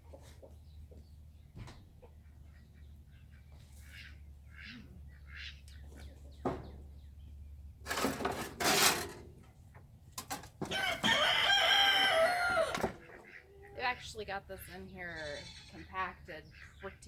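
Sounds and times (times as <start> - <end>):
tool scraping coop bedding: 7.8 - 13.4
rooster crowing: 10.7 - 13.0
faint chicken calls: 10.7 - 13.8.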